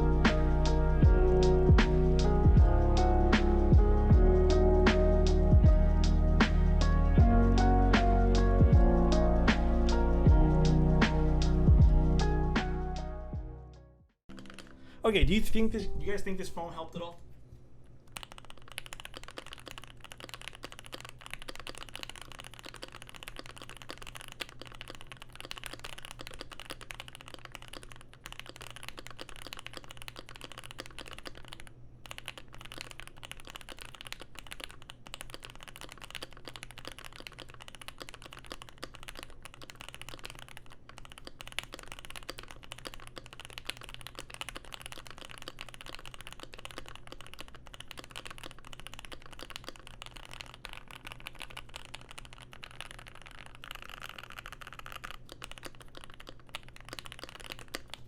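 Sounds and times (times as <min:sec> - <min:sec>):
mechanical keyboard typing: 0:14.3 - 0:14.8, 0:18.1 - 0:58.0.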